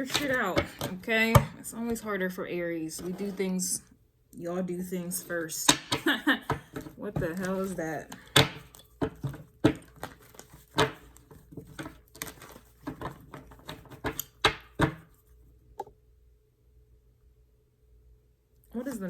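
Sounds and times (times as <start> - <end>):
cards clicking and sliding on table: 5.8 - 15.0.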